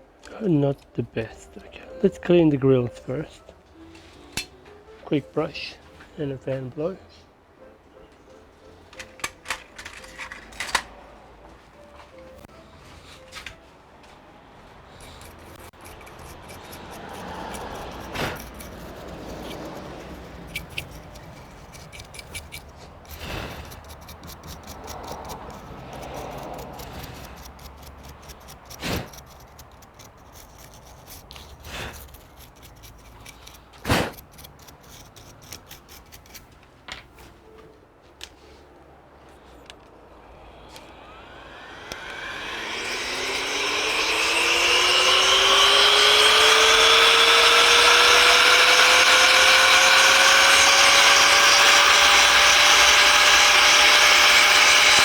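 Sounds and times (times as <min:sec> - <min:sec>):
brush scrubbing grille: 0:14.9 - 0:36.5
fan whine spinning up: 0:39.8 - 0:55.0.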